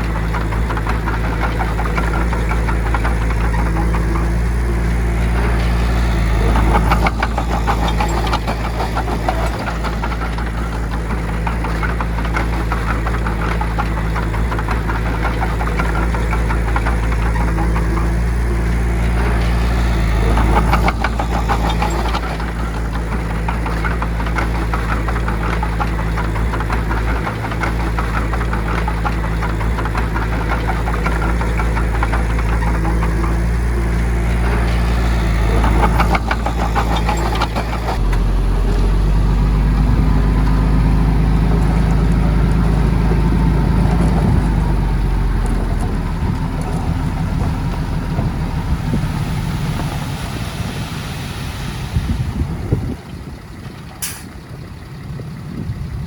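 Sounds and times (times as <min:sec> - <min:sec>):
heavy diesel engine rattling: 0:00.0 - 0:56.0.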